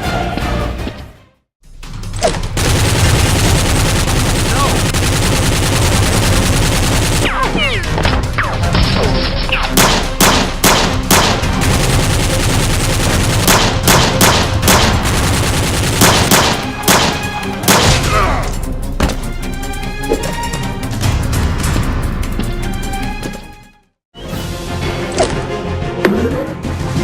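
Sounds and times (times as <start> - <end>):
background music: 0.0 - 27.0
rapid gunfire: 2.6 - 7.6, 9.8 - 18.3.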